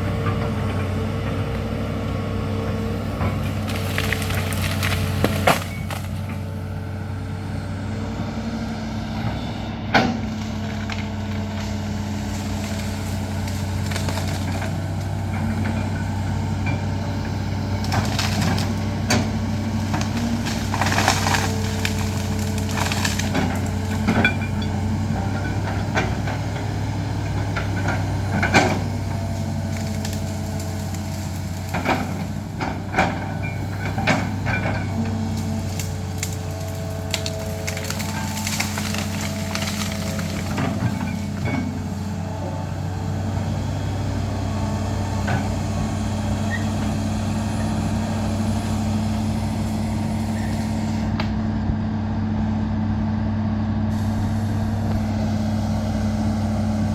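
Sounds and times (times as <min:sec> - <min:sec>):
excavator diesel engine running: 0:00.0 - 0:56.9
wood cracking and breaking: 0:03.3 - 0:06.4, 0:10.4 - 0:15.8, 0:17.6 - 0:24.6, 0:27.6 - 0:42.1.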